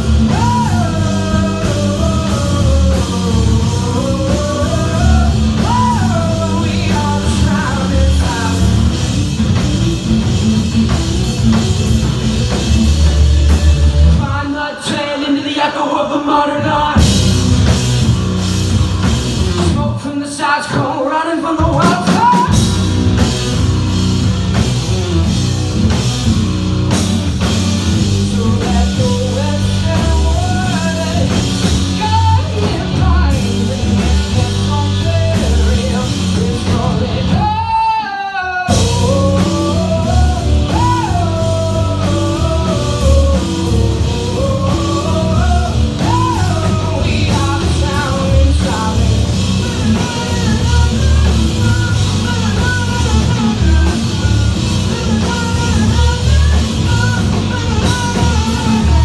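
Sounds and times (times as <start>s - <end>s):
person singing: 0.0s - 9.2s, 28.1s - 59.0s
rock band playing live: 0.0s - 15.1s, 16.1s - 59.0s.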